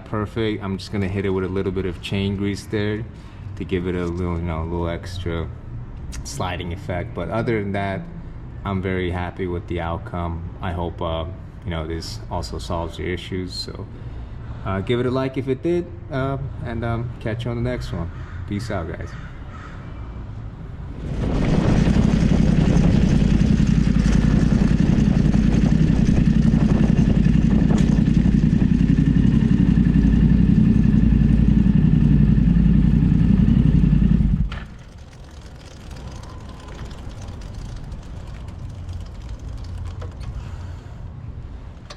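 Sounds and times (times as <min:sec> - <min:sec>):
low background hum: 0:00.0 - 0:41.9
motorcycle engine running: 0:21.0 - 0:40.5.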